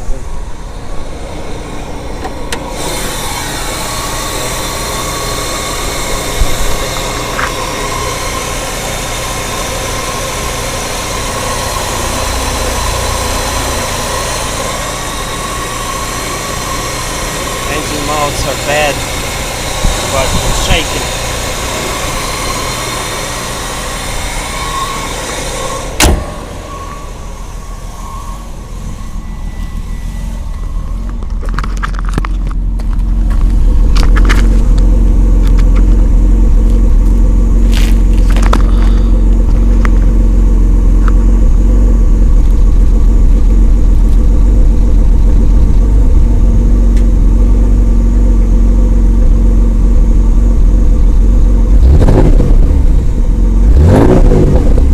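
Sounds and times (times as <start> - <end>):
car engine running: 0.0 - 54.9
loud low rumble: 0.0 - 54.9
sharp knock: 26.0 - 26.4.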